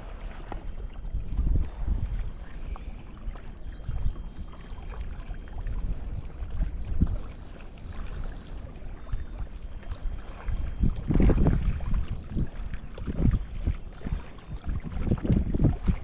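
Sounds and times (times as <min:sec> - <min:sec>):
water moving around kayak: 0:00.0 - 0:16.0
wind rumbling on microphone: 0:00.0 - 0:16.0.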